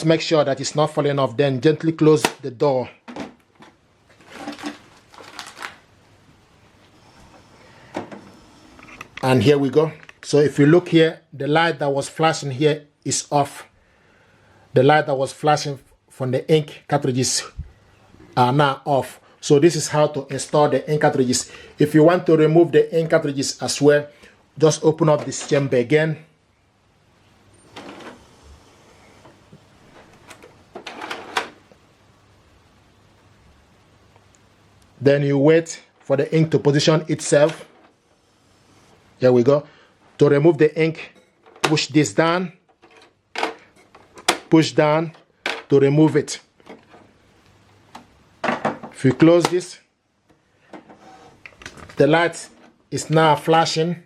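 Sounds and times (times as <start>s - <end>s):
printer mechanism whirring: 27.6s - 28.4s, 29.2s - 31.6s.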